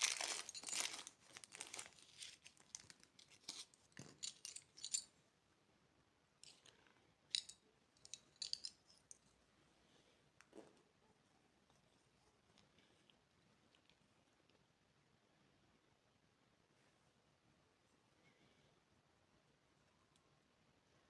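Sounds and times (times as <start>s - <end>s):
candy packaging rustling: 0.0s - 5.1s.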